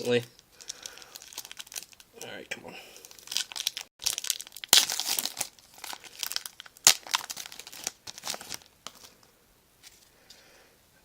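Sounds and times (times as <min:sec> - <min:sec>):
wrapper being torn and crinkled: 0:00.0 - 0:02.3, 0:03.0 - 0:09.2
sharp wrapper rips: 0:00.6 - 0:02.3, 0:03.0 - 0:09.1.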